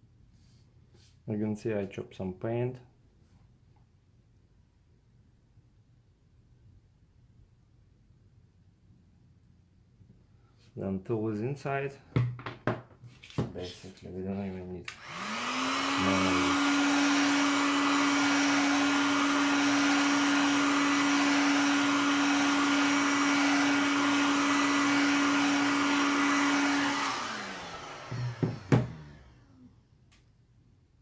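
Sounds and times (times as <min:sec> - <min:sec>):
hot-air blower humming: 0:14.9 - 0:29.9.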